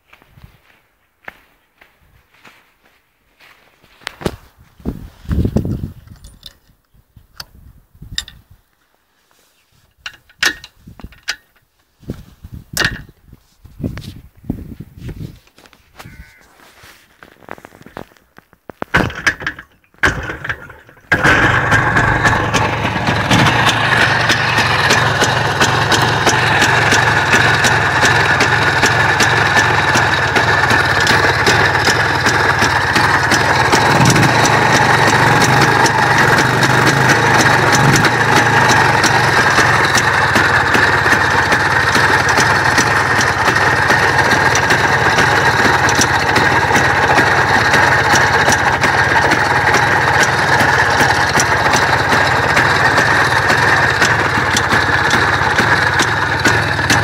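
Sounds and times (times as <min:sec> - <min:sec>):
fine ticking: 0:20.0 - 0:57.0
vehicle engine idling: 0:20.0 - 0:57.0.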